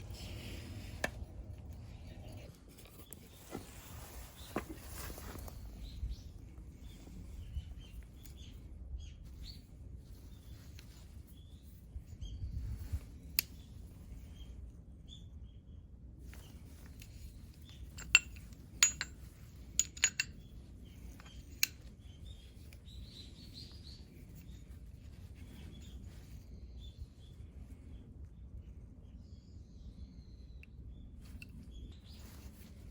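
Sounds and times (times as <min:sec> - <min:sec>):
low steady hum: 0:00.0 - 0:32.9
metal tools clinking: 0:17.8 - 0:20.5.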